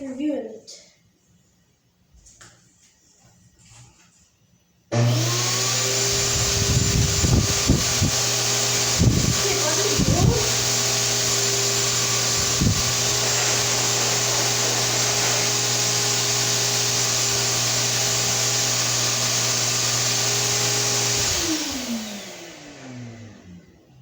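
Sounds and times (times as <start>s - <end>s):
vacuum blower running: 4.9s - 24.0s
vacuum motor spinning down: 4.9s - 24.0s.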